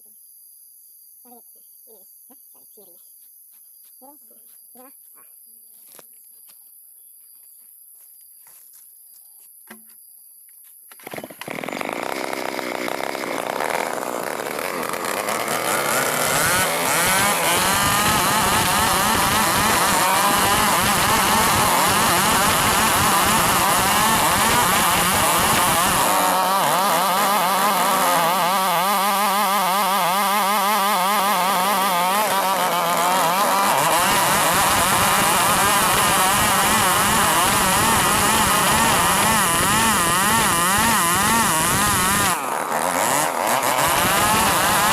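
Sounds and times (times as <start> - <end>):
chainsaw sawing through timber: 11.0 - 44.9.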